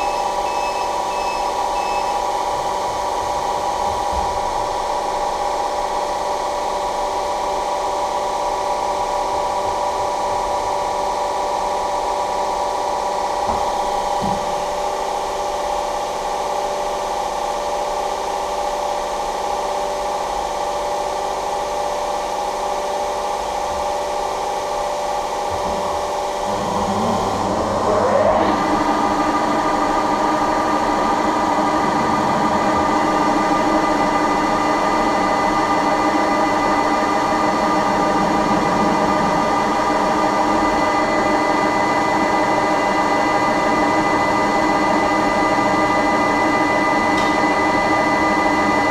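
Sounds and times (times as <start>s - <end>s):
machine humming: 0.0s - 5.7s, 23.4s - 48.9s.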